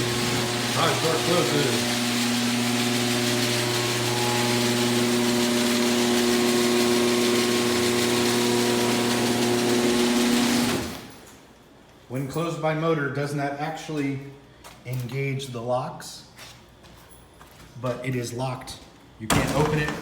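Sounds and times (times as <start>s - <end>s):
garage door opener motor humming: 0.0s - 11.4s.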